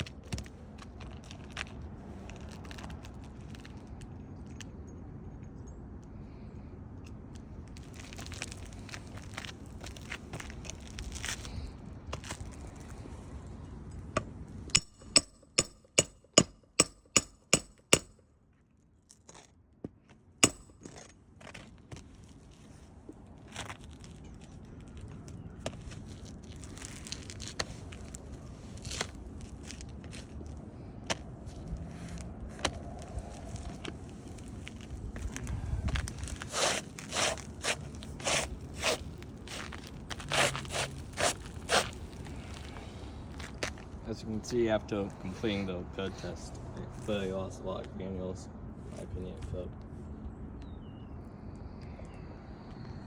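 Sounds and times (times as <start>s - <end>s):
gritty scuffs on roof shingles: 0.0s - 4.0s, 7.7s - 13.3s, 19.1s - 46.4s
hammer striking metal: 14.2s - 18.2s, 20.4s - 20.9s.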